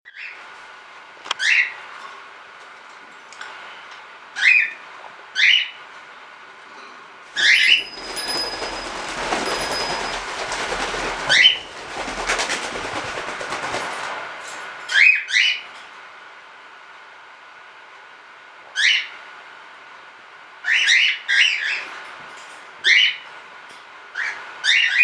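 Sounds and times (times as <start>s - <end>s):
flapping wings: 7.4s - 14.7s.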